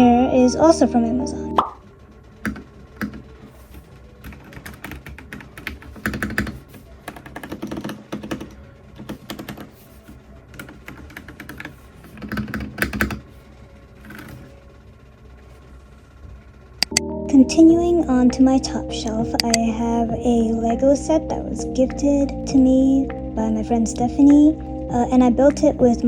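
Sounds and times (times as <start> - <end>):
keyboard typing clicks: 2.4 - 3.2, 4.2 - 9.7, 16.8 - 17.1, 19.3 - 19.6.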